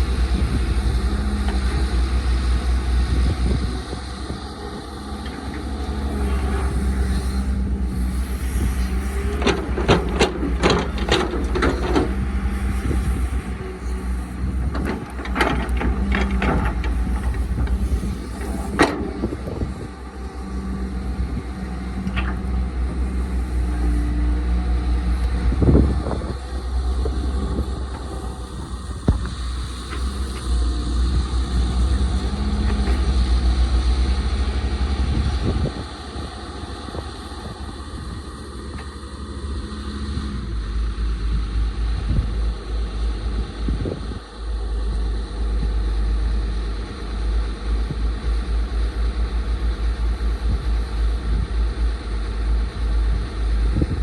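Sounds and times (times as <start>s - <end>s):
excavator diesel engine running: 0.0s - 54.0s
metal clanks and knocks: 8.8s - 19.8s.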